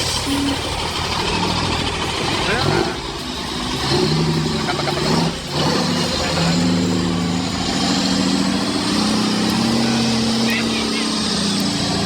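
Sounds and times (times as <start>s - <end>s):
heavy truck engine running: 0.0s - 12.0s.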